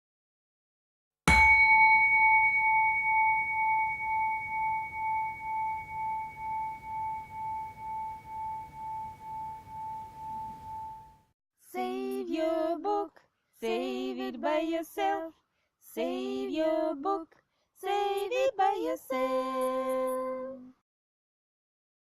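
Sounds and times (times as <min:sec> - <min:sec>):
bell note ringing with wobble: 0:01.3 - 0:11.2.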